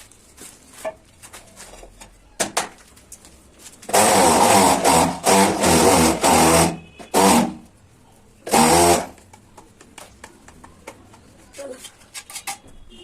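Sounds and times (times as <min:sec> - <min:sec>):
power tool motor bursts: 0:03.9 - 0:07.6, 0:08.4 - 0:09.2.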